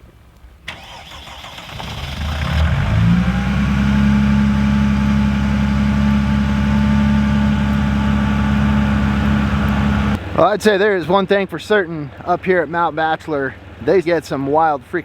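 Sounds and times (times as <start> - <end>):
van engine idling: 0.7 - 10.3.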